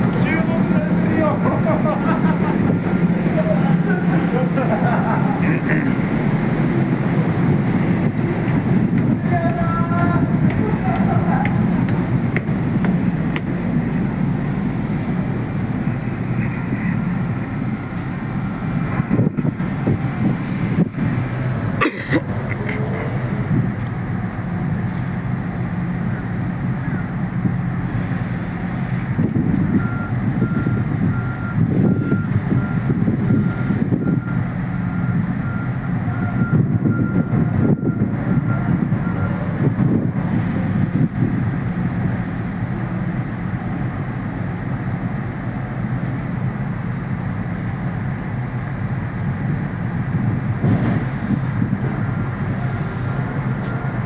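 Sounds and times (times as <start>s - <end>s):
low engine drone: 0.0s - 54.0s
reversing alarm beeping: 6.1s - 21.8s, 26.1s - 27.2s, 29.7s - 39.7s, 51.8s - 54.0s.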